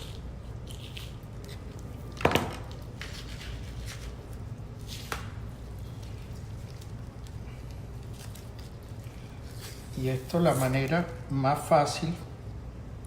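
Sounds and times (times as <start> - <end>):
wet handling of raw meat: 2.8 - 11.2.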